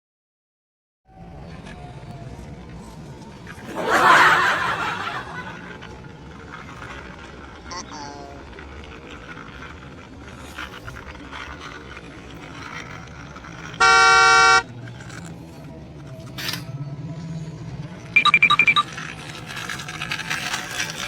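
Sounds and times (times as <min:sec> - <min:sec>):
horn toot: 0:13.8 - 0:14.7
short high beeps: 0:18.2 - 0:18.9.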